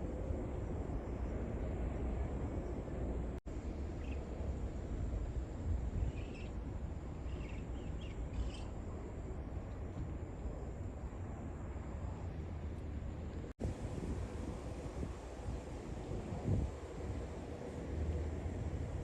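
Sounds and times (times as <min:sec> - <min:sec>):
wind rumbling on microphone: 0:00.0 - 0:19.0
faint bird chirps: 0:04.0 - 0:04.3, 0:06.0 - 0:06.6, 0:07.2 - 0:08.7.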